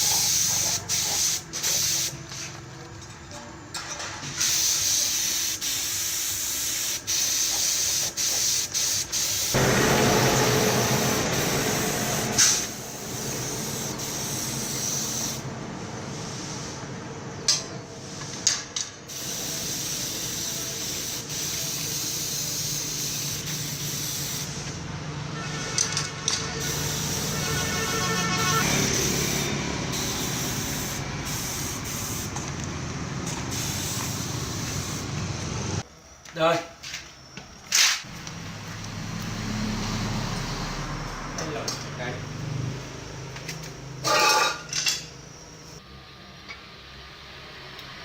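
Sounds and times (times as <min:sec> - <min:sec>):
spray paint hissing: 0:00.0 - 0:02.4, 0:04.4 - 0:15.5, 0:19.1 - 0:24.8, 0:26.3 - 0:32.5, 0:33.2 - 0:35.4.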